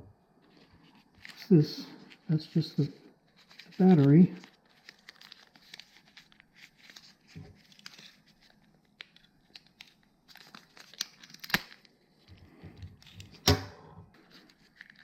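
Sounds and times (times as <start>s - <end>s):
plastic packaging crinkling: 0.5s - 13.4s, 14.2s - 15.0s
crackling rip: 10.3s - 11.8s.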